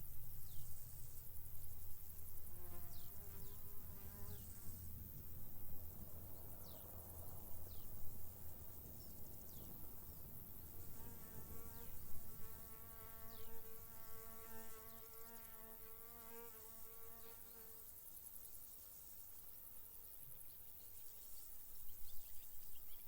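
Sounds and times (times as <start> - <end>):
crickets chirring: 0.0 - 23.0
flying insect buzzing: 0.5 - 5.0, 8.8 - 18.0.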